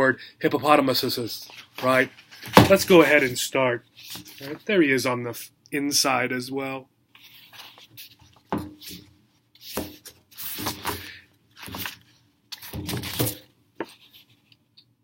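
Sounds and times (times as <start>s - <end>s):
book pages turning: 7.2s - 14.6s.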